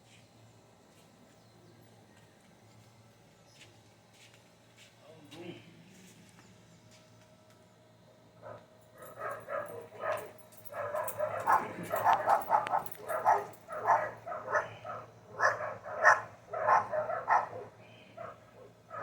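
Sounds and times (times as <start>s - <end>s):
dog barking: 8.4s - 19.0s.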